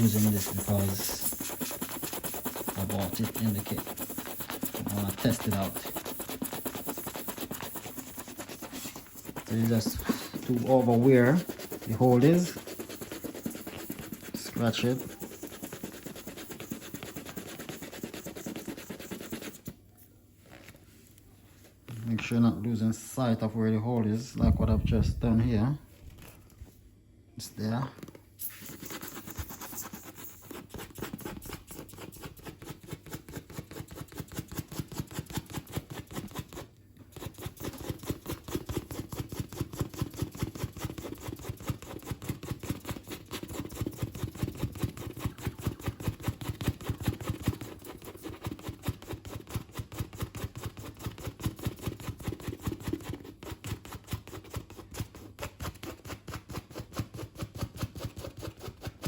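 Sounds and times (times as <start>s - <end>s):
scrubber scuffing rubber tube: 0.0s - 15.4s.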